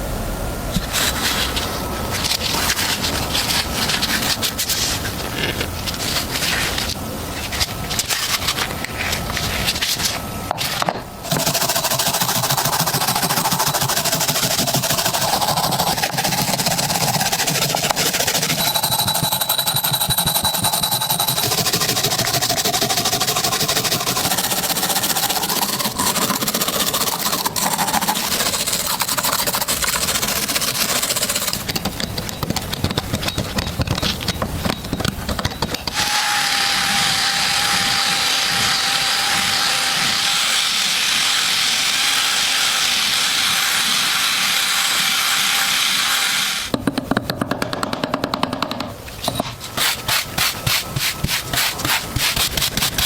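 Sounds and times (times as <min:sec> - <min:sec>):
small power tool whining: 0:35.9 - 0:46.7.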